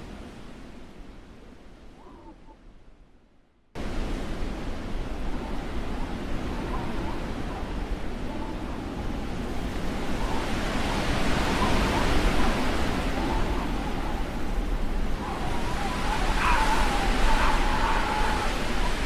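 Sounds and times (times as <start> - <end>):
gusting wind: 3.8 - 19.0
wind whistling: 8.7 - 19.0.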